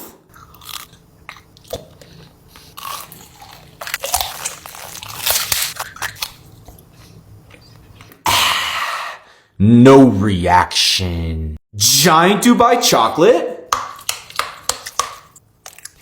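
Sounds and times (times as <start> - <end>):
person chewing crunchy food: 0.0 - 8.1, 13.9 - 16.0.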